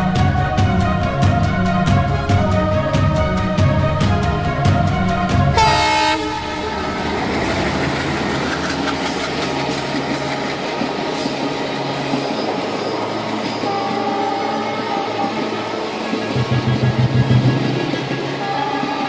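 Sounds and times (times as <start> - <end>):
train rumbling on rails: 0.0 - 19.0
train horn blast: 5.5 - 7.6, 13.6 - 15.9, 18.4 - 19.0.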